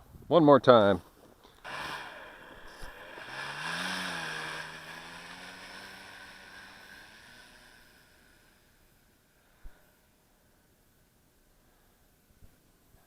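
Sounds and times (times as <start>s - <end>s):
rc airplane motor and propeller: 1.6s - 9.3s.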